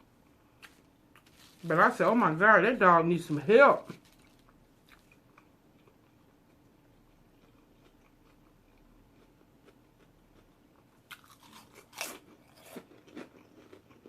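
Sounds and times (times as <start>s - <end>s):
crunching bites of sandwich: 11.0s - 14.0s.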